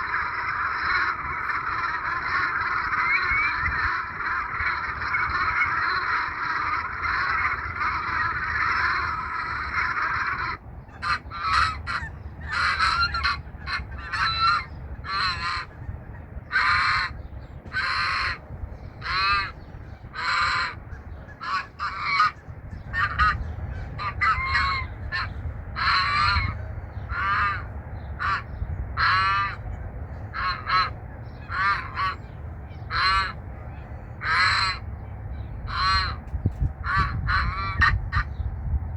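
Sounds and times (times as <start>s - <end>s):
geese honking: 0.0s - 38.4s.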